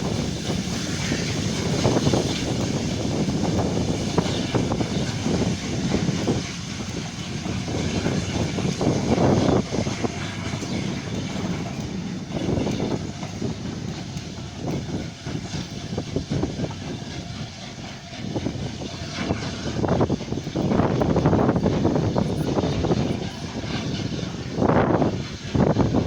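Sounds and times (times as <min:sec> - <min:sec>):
steam train rumbling: 0:00.0 - 0:26.0.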